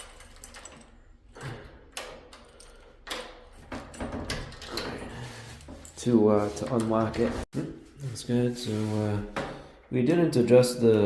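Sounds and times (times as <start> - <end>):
key turning in door lock: 0.0 - 5.1.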